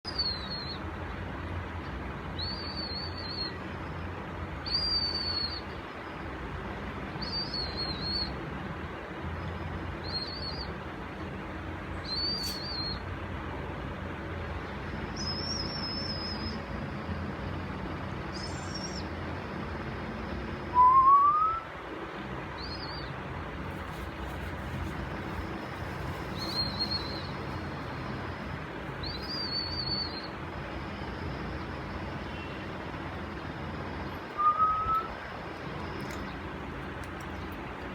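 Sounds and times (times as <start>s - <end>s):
bird whistled chirps: 0.1s - 0.8s, 2.4s - 3.6s, 4.6s - 5.7s, 7.2s - 8.3s, 10.0s - 10.7s, 12.0s - 13.0s, 15.2s - 16.6s, 18.3s - 19.1s, 20.7s - 21.7s, 22.6s - 23.1s, 26.3s - 27.4s, 29.0s - 30.4s, 34.4s - 35.1s
rising bird whistle: 0.1s - 0.8s, 2.4s - 3.6s, 4.6s - 5.7s, 7.2s - 8.4s, 10.0s - 10.7s, 12.0s - 13.0s, 15.2s - 16.7s, 20.7s - 21.7s, 22.6s - 23.1s, 26.3s - 27.5s, 29.0s - 30.4s, 34.3s - 35.2s
steady low hum: 0.1s - 37.9s.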